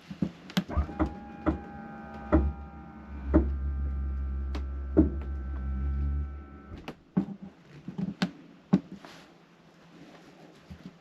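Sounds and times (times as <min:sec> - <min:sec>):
hydraulic pump humming: 0:00.7 - 0:06.9.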